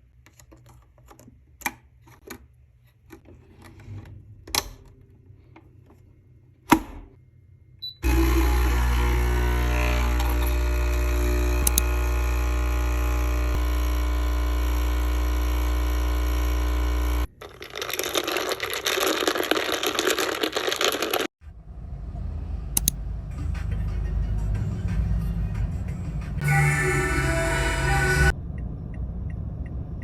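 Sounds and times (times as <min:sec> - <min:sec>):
coffee machine pump humming: 0:08.0 - 0:19.0
low rumble: 0:27.2 - 0:30.0.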